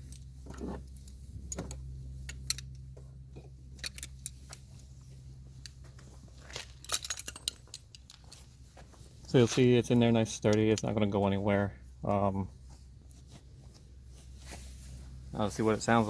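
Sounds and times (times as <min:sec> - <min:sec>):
light clicks and clinks of handling: 0:00.0 - 0:08.5, 0:09.3 - 0:11.3
steady low hum: 0:00.0 - 0:16.0.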